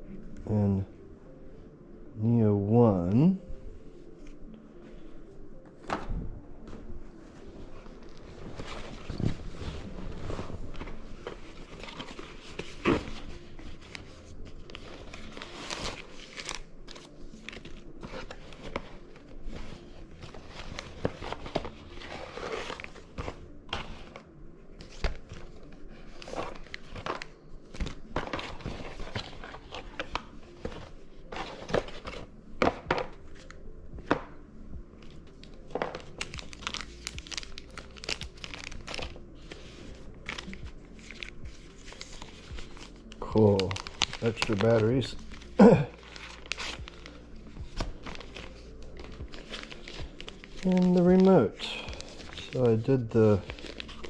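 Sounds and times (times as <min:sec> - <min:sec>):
packaging crinkling and tearing: 0:08.0 - 0:24.3, 0:35.4 - 0:54.0.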